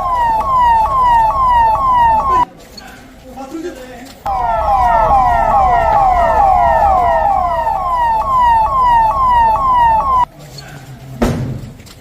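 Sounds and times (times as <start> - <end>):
emergency vehicle sirens: 0.0 - 2.5, 4.3 - 10.3.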